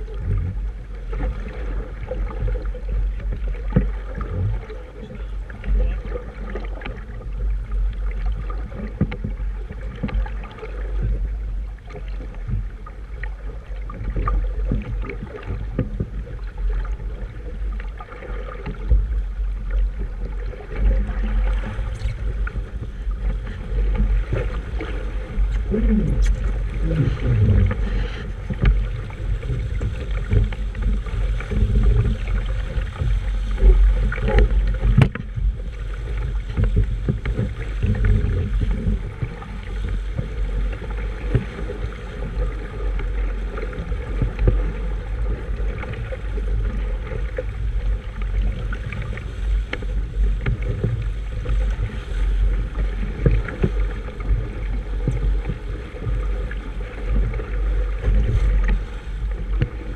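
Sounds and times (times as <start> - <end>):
wind buffeting microphone: 20.8 - 46.8.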